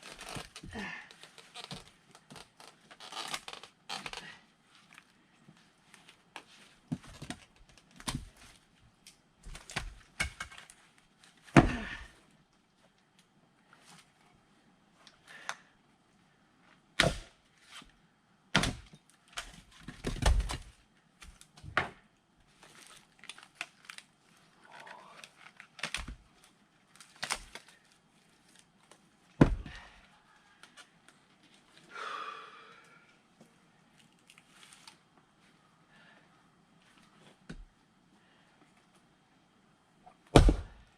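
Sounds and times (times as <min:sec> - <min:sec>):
axe splitting firewood: 0:11.6 - 0:12.0, 0:17.0 - 0:17.3, 0:40.3 - 0:40.8.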